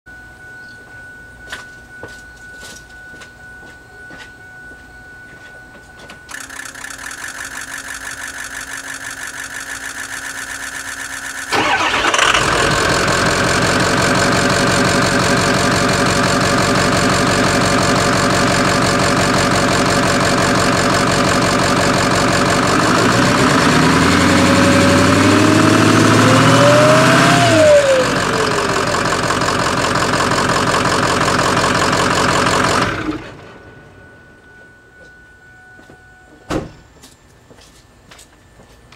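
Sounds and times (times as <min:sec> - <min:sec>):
starter cranking engine: 0:06.3 - 0:33.2
diesel engine running loudly: 0:06.3 - 0:34.1.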